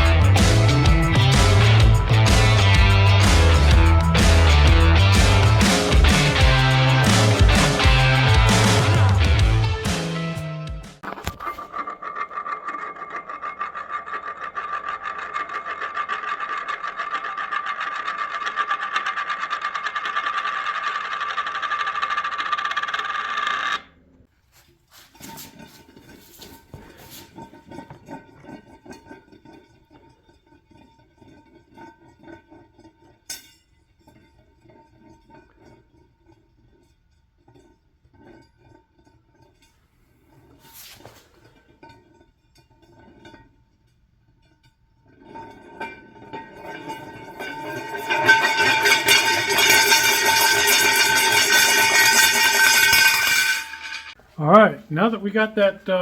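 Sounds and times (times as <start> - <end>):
metal parts scraping and knocking: 11.0 - 23.9, 45.9 - 54.2.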